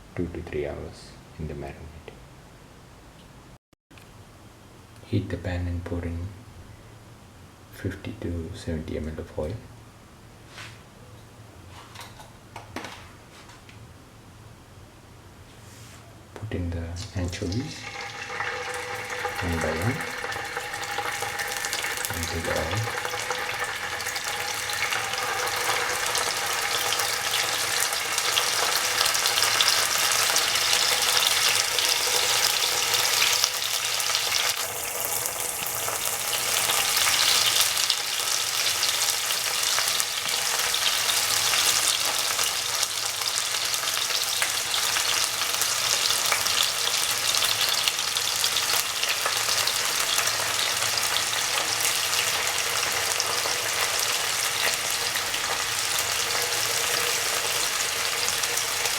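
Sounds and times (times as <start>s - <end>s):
fish sizzling in hot oil: 17.4s - 58.9s.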